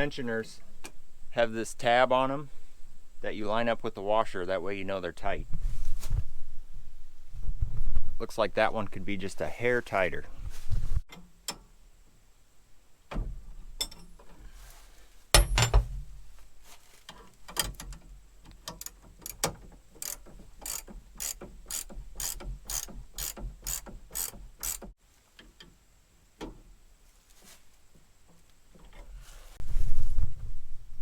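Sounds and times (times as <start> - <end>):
metal clank: 13.8 - 14.3, 15.4 - 16.2
ratchet wrench clicking: 18.7 - 24.9.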